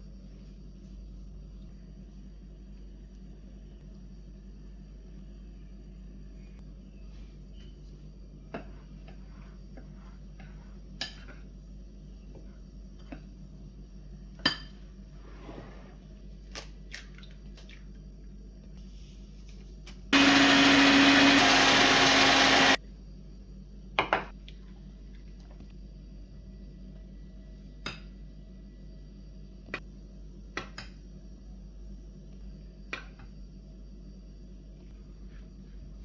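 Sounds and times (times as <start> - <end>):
blender motor whirring: 20.2 - 22.8.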